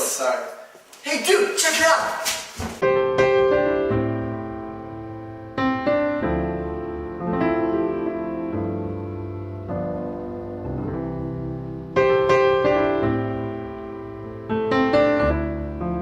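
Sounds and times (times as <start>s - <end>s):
slow piano chords: 2.8s - 16.0s.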